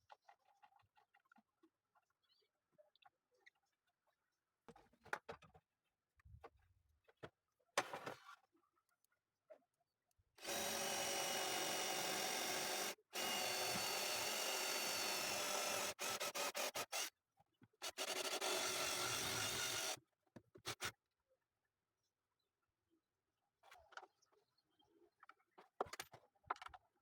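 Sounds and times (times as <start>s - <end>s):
circular saw cutting wood: 10.4s - 17.1s, 17.9s - 20.0s.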